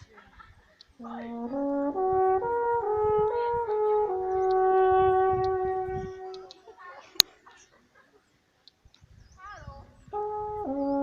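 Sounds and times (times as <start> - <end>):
solo brass melody: 1.0 - 6.7, 10.0 - 11.0.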